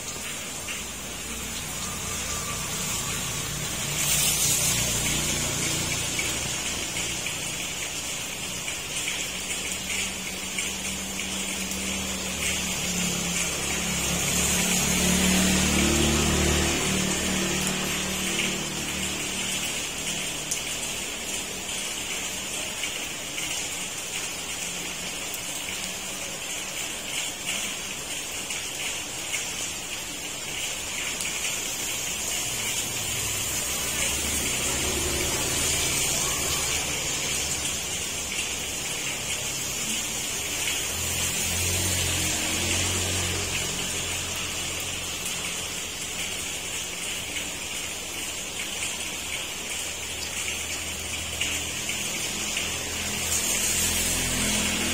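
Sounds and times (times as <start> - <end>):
heavy rain falling: 0.0 - 54.9.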